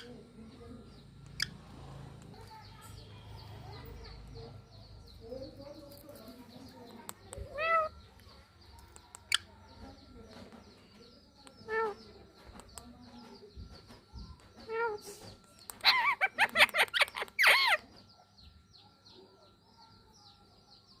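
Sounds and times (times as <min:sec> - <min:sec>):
faint high chirps: 0:00.0 - 0:21.0
parakeet screeching calls: 0:07.5 - 0:08.1, 0:15.7 - 0:18.0.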